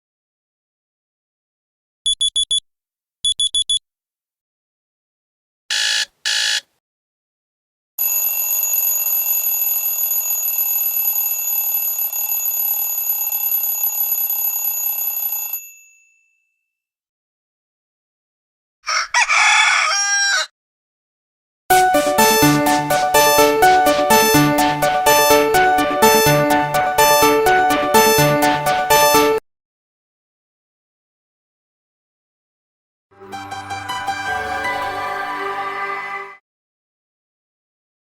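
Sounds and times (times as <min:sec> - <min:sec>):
phone alarm beeps: 0:02.1 - 0:02.6, 0:03.3 - 0:03.8, 0:05.7 - 0:06.6
phone alarm ringing: 0:05.7 - 0:06.6, 0:08.0 - 0:15.7, 0:21.8 - 0:29.4.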